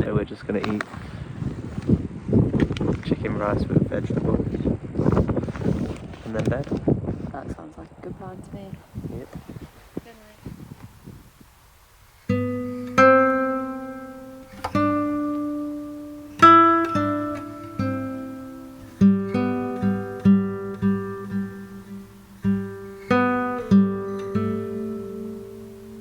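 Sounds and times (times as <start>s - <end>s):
acoustic guitar plucking: 12.2s - 26.0s.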